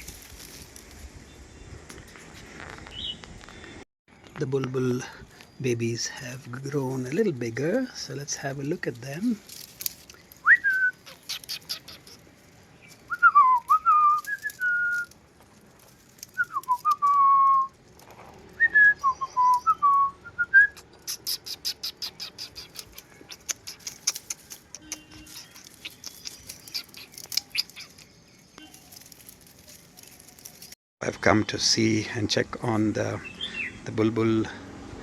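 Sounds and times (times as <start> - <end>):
bulbul singing whistled phrases: 10.4 - 12.2, 12.8 - 15.1, 18.6 - 28.9
rapid high ticking: 21.0 - 30.8.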